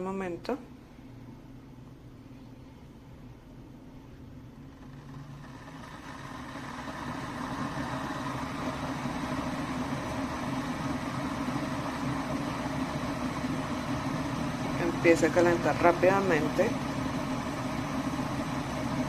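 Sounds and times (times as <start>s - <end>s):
electric kettle heating water: 4.1s - 19.0s.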